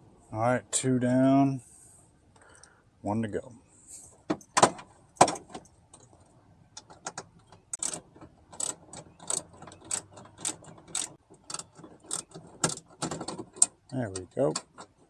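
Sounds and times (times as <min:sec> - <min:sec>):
socket ratchet clicking: 0:07.8 - 0:12.8.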